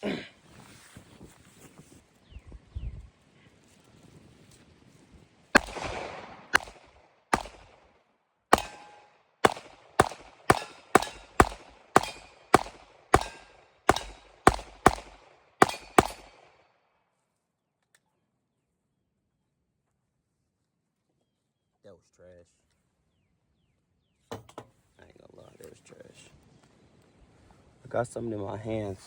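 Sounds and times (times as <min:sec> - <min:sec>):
pistol shots with echo: 0:05.6 - 0:07.9, 0:08.5 - 0:16.6.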